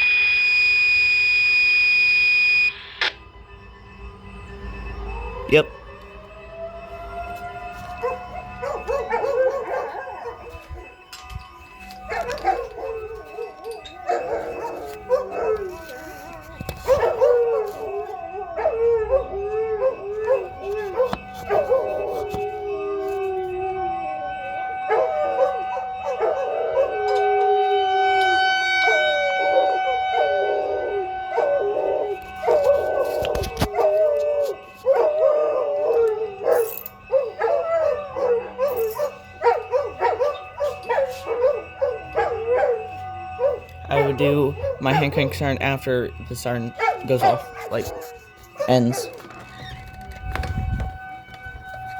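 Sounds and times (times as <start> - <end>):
distant warning siren: 0.0 - 51.9
dog howling: 8.0 - 11.0, 11.9 - 45.1, 46.7 - 51.1.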